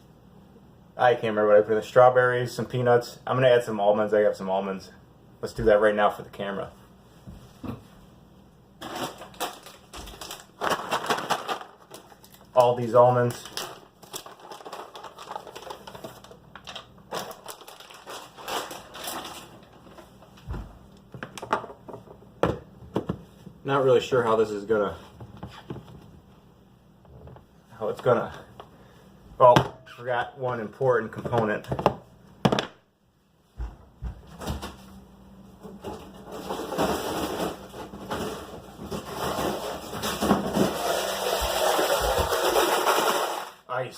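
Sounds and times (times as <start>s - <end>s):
ice rustling and rattling: 8.8s - 20.1s, 36.2s - 43.6s.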